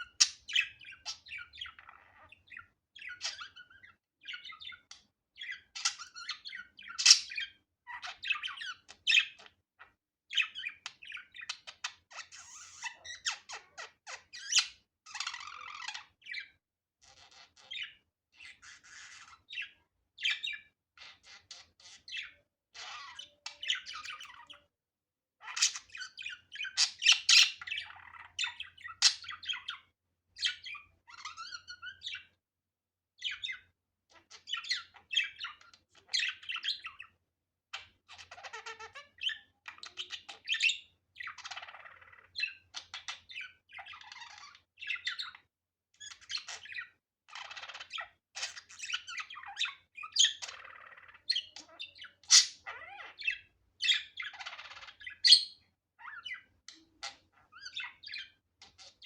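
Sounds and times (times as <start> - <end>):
budgerigar chattering and warbling: 0.0 - 9.5, 25.4 - 29.8, 46.0 - 59.0.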